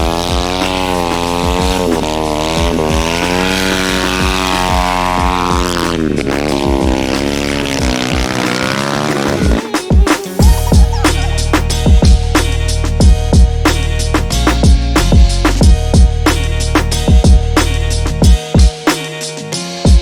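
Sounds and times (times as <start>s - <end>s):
mini kart motor running: 0.0s - 11.5s.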